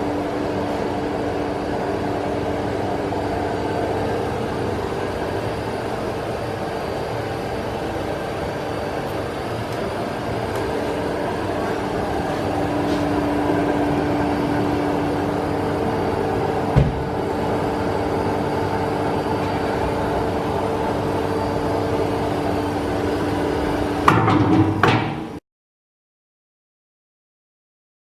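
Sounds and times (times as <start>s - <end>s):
vacuum filler machine droning: 0.0s - 25.4s
machine knocks clattering: 24.1s - 25.4s.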